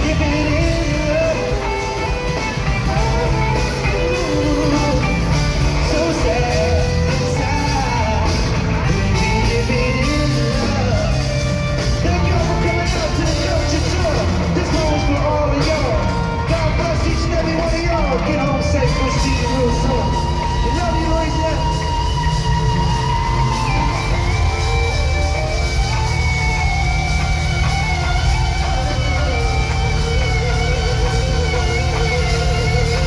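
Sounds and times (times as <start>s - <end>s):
live band music with singing: 0.0s - 33.0s.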